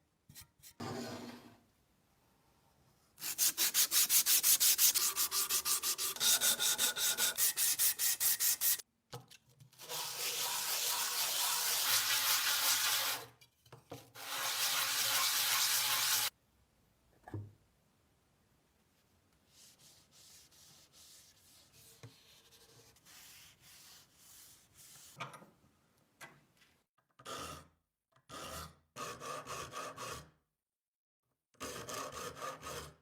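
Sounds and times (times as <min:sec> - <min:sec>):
sandpaper scrubbing on wood: 0:03.2 - 0:08.8, 0:09.9 - 0:13.2, 0:14.2 - 0:16.3.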